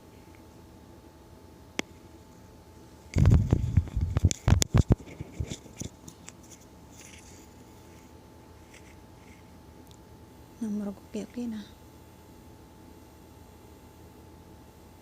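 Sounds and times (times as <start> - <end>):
steady low hum: 0.0 - 15.0
small ticks: 3.1 - 8.1.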